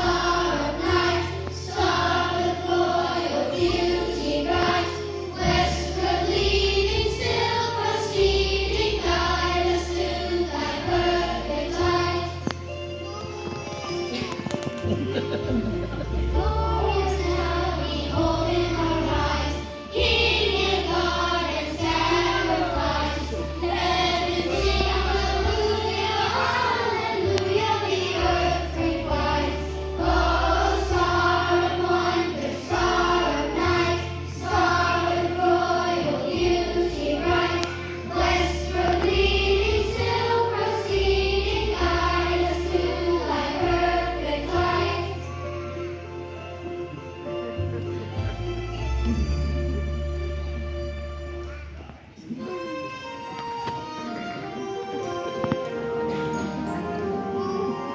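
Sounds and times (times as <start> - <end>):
children singing: 0.0 - 45.8
musical accompaniment with bass: 0.0 - 57.9.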